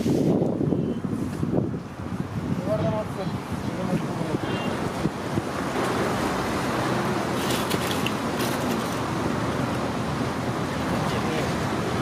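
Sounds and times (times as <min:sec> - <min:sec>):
road traffic noise: 0:00.0 - 0:12.0.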